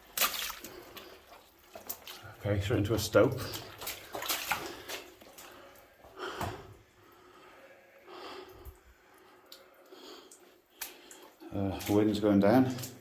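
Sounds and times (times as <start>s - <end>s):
person breathing: 4.6s - 11.4s.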